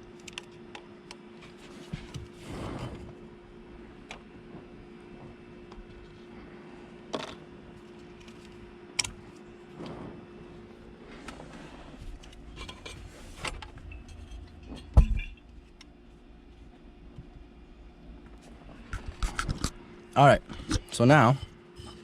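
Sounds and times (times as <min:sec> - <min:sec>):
metal tools clinking and knocking: 0:13.9 - 0:15.4.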